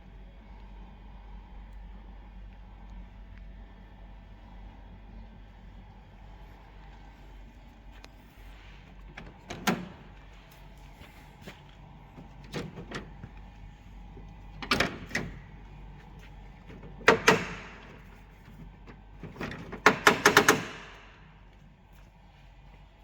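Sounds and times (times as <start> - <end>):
sharp knocks and clatters: 14.2 - 21.2.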